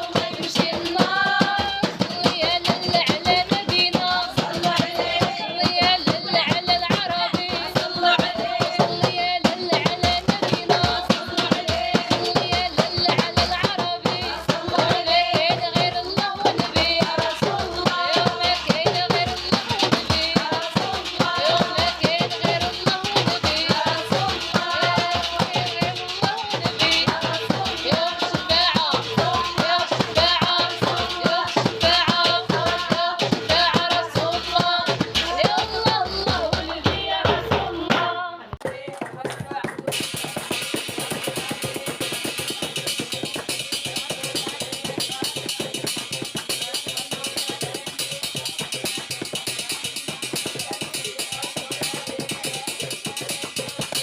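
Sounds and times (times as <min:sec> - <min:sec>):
person singing: 0:00.0 - 0:49.3
fast hand percussion and rattles: 0:00.0 - 0:54.0.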